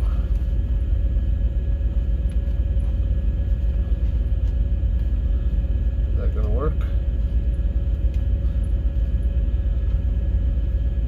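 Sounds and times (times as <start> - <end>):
faint steady hum: 0.0 - 11.0
truck engine idling: 0.0 - 11.0.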